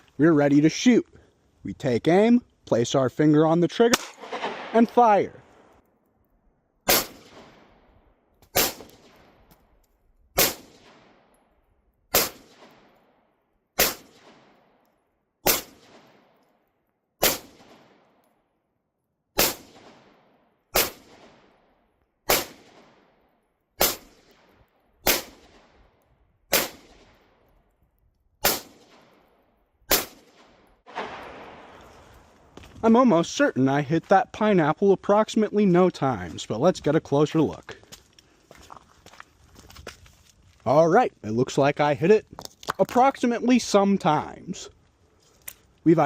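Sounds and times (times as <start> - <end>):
pistol shots with echo: 3.9 - 5.1, 6.8 - 7.9, 8.5 - 9.4, 10.4 - 11.3, 12.1 - 14.8, 15.4 - 16.4, 17.2 - 18.2, 19.4 - 23.2, 23.8 - 25.8, 26.5 - 27.4, 28.4 - 31.7.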